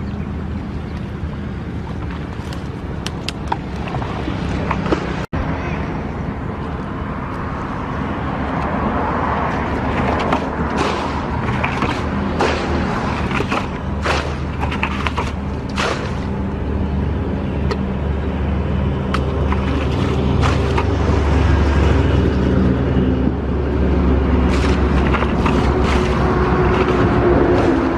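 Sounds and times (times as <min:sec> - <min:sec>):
small engine running: 0:24.1 - 0:27.9.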